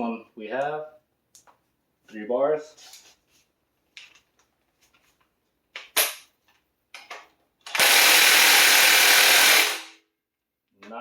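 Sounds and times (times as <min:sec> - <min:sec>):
impact wrench hammering: 0:07.7 - 0:10.0.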